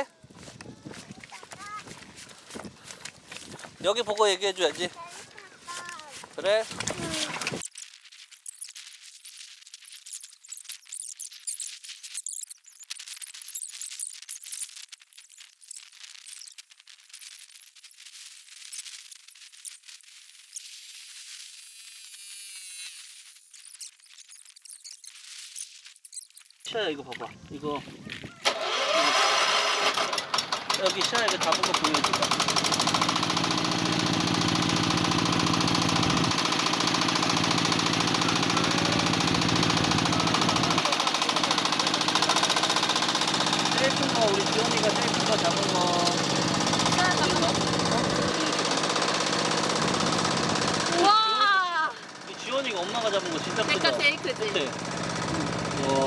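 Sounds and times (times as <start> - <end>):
engine running with knocking beat: 30.0 - 51.2, 52.0 - 56.0.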